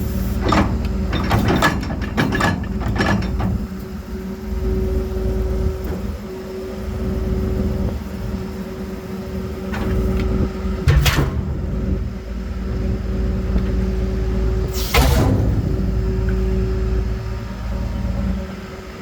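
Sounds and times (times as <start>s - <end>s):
truck engine hum with whine: 0.0s - 19.0s
air hiss: 14.7s - 15.4s.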